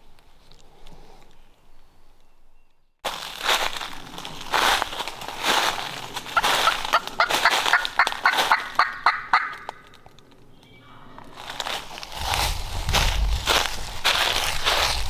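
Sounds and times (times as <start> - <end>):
footsteps crunching dry leaves: 3.0 - 10.1, 11.2 - 15.0
turkey yelps: 6.3 - 9.8.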